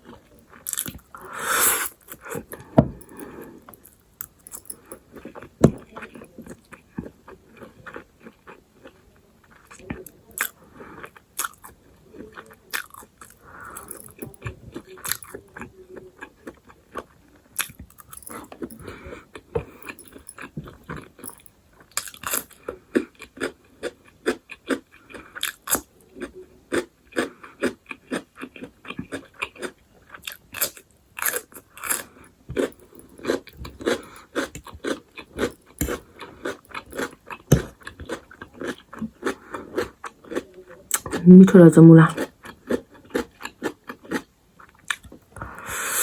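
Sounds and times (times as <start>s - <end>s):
crunching and chewing radish: 0.0s - 41.4s, 42.1s - 46.0s.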